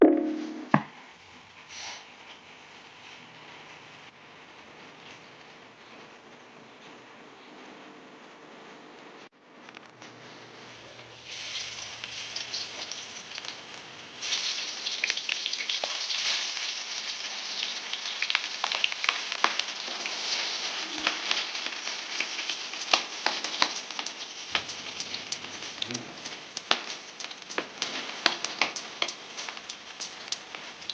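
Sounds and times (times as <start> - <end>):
food sizzling in hot oil: 10.7 - 30.9.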